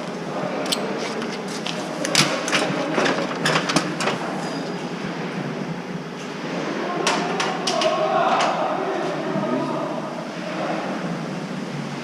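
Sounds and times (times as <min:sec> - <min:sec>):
sharp knocks and clatters: 0:02.1 - 0:04.2.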